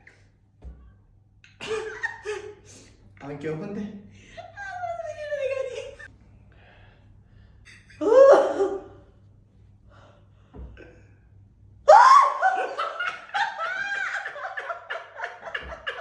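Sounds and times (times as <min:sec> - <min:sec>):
loud laughter: 0:11.9 - 0:16.0.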